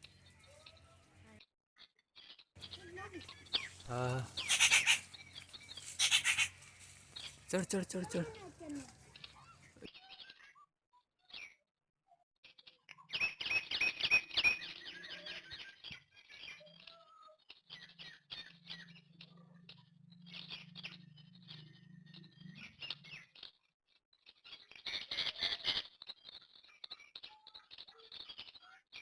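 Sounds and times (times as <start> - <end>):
bird of prey calling: 2.6 - 9.8.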